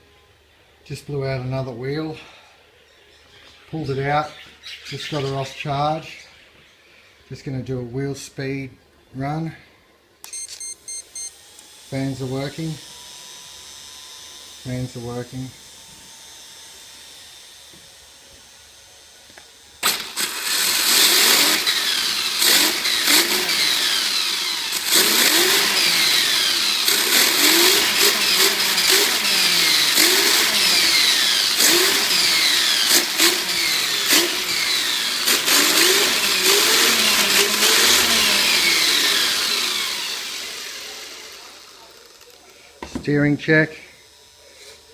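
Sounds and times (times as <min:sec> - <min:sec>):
toy car electric motor whining: 0:10.3 - 0:42.7, 0:43.8 - 0:44.9.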